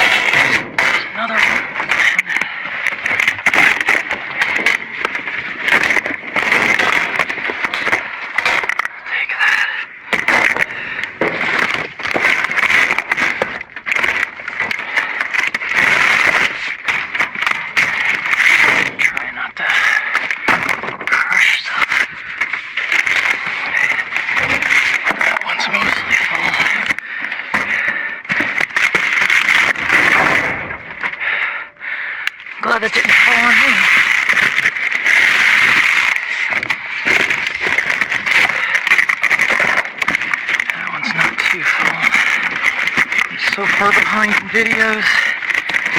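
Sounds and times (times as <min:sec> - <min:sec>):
debris clattering and scraping: 0:00.0 - 0:08.9, 0:10.1 - 0:31.2, 0:32.3 - 0:45.9.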